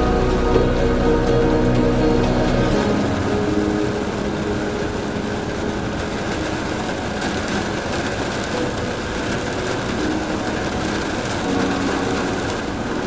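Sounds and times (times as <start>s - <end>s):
vehicle engine: 0.0s - 6.4s
road rumble: 0.0s - 8.5s.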